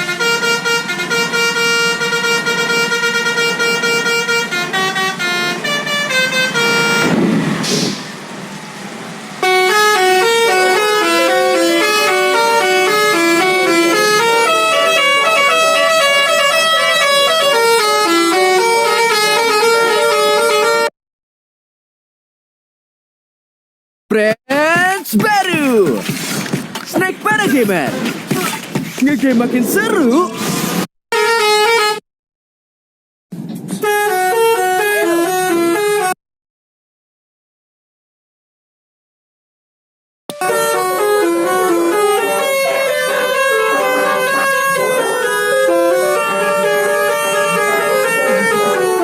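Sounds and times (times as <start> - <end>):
multi-tone bus horn tune: 0.0 - 20.9, 29.8 - 32.0, 33.7 - 36.2, 40.3 - 49.0.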